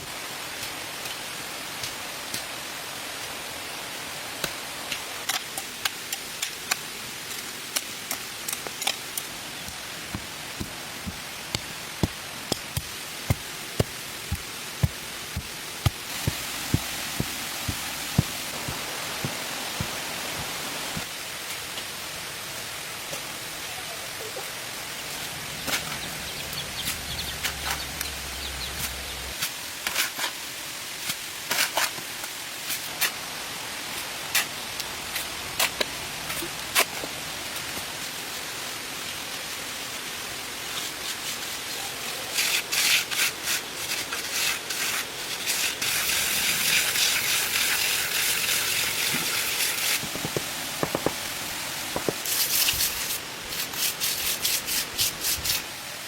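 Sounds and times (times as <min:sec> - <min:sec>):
steady hiss: 0:00.0 - 0:56.0
scraping against brick and cement: 0:08.1 - 0:21.1, 0:42.3 - 0:55.7
knocks on masonry: 0:50.0 - 0:51.3, 0:51.9 - 0:52.2.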